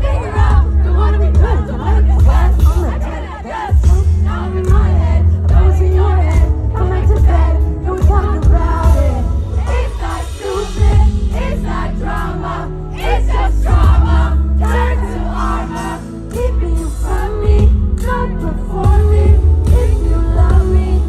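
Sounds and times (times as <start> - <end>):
band with heavy bass line: 0.0 - 21.0
woman singing: 0.0 - 21.0.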